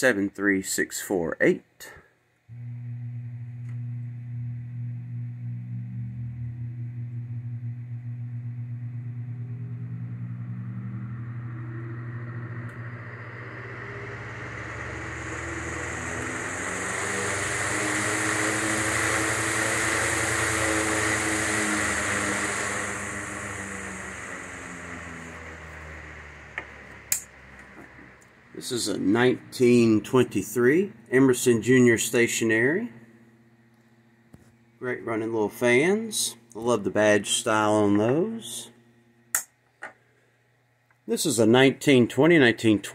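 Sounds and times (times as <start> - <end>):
fan motor hum: 2.5 - 42.9
rush of air from fan blades: 8.8 - 31.0.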